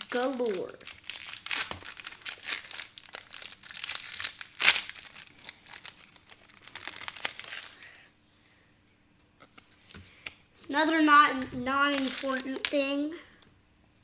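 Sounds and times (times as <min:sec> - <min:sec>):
foil wrapper crinkling: 0:00.0 - 0:07.9, 0:11.7 - 0:12.9.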